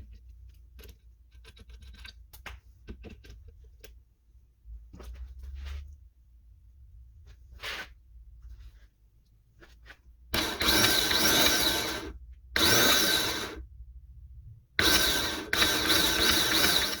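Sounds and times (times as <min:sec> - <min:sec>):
starter motor whine: 0:10.3 - 0:13.6, 0:14.8 - 0:17.0.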